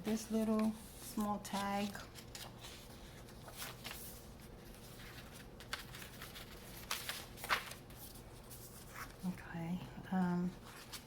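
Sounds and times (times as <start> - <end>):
paper rustling and tapping: 4.7 - 9.2.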